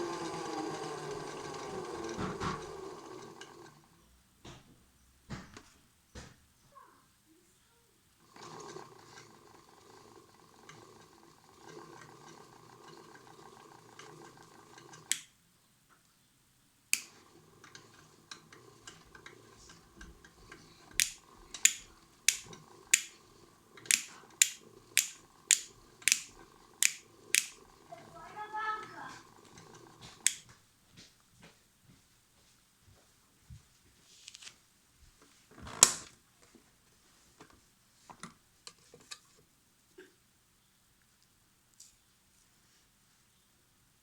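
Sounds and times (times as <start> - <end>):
switch click: 16.9 - 17.1, 21.0 - 23.2, 23.9 - 27.6
sharp clicks: 16.9 - 17.2, 21.0 - 23.2, 23.8 - 27.6, 30.2 - 30.5
small electric motor humming: 23.9 - 30.4.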